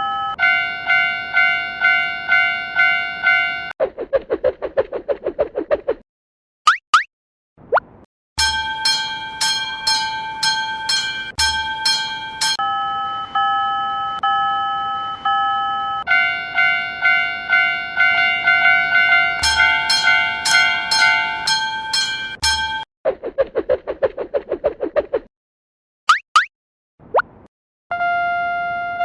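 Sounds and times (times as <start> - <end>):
lower pulsing chime: 0.0 - 3.7, 8.4 - 22.9
railroad crossing warning bells: 0.0 - 3.8, 8.4 - 22.9.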